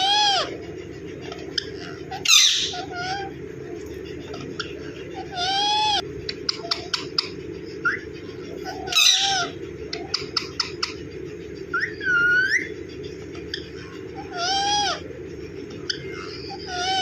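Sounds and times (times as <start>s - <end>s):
parrot whistled call: 0.0s - 0.6s, 1.6s - 3.3s, 5.2s - 10.9s, 11.7s - 12.8s, 14.2s - 15.0s, 15.9s - 17.0s
parrot squawk: 0.0s - 3.4s, 4.2s - 11.0s, 11.6s - 17.0s
low hum: 0.0s - 17.0s.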